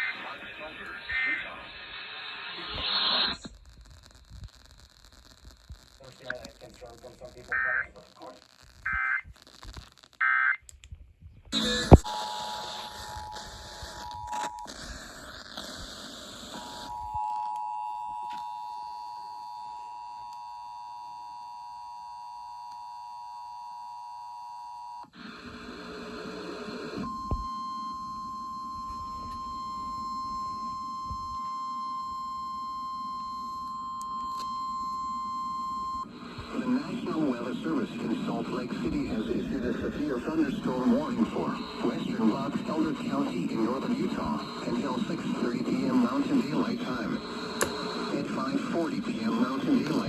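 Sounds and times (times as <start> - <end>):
radio static: 0.0 - 10.6, 11.5 - 17.2, 36.0 - 50.0
single steady alarm tone: 11.6 - 14.8, 16.4 - 25.1, 27.0 - 36.1.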